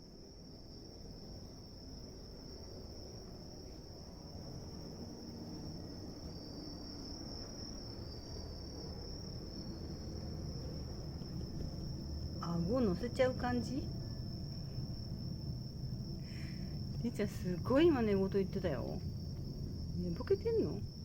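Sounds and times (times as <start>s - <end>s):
crickets trilling: 0.0s - 21.0s
low rumbling noise: 9.9s - 21.0s.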